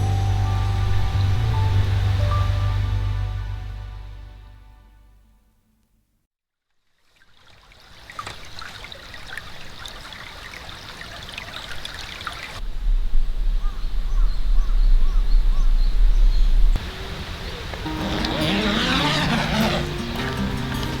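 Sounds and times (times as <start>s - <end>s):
heavy low rumble: 0.0s - 4.9s, 12.6s - 16.8s
trickling water: 6.7s - 12.6s.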